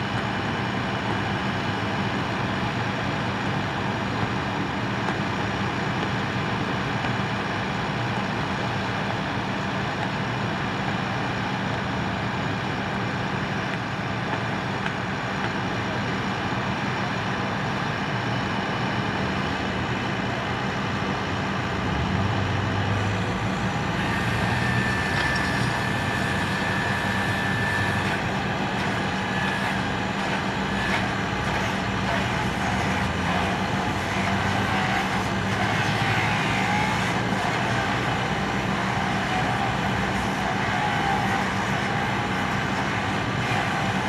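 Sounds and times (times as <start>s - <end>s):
engine humming: 0.0s - 44.0s
thin high whine: 22.9s - 44.0s.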